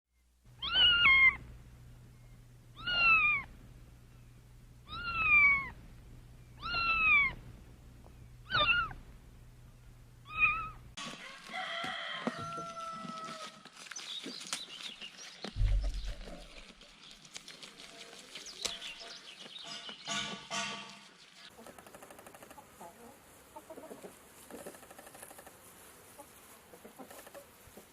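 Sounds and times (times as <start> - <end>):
cat meowing: 0.6 - 1.4, 2.8 - 3.5, 4.8 - 5.8, 6.6 - 7.4, 8.5 - 9.0, 10.2 - 10.8
low thump: 15.6 - 16.6.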